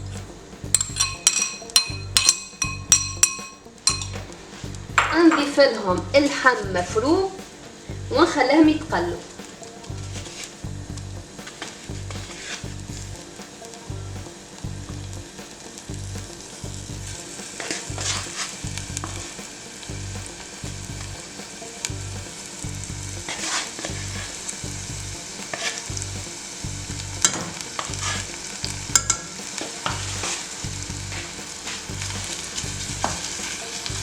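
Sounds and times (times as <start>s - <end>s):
meat and onion sizzling in a pan: 11.4s - 34.0s.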